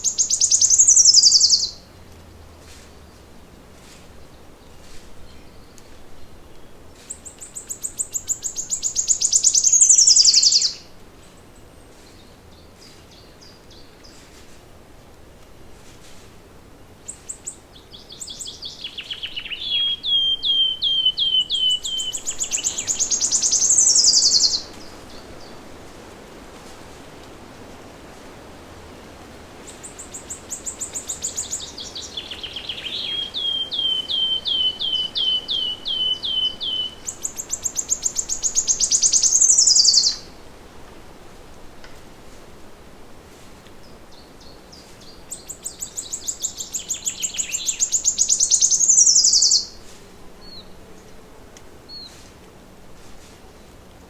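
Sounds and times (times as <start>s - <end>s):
songbird trilling song: 0.0s - 1.9s, 4.2s - 14.2s, 17.1s - 25.6s, 29.6s - 40.3s, 43.8s - 49.8s
faint forest background: 0.0s - 54.0s.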